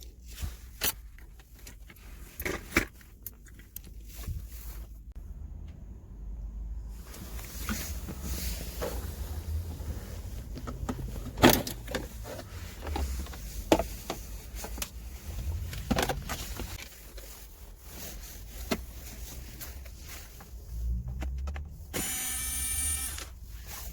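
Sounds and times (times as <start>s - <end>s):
low rumble: 14.6s - 16.8s.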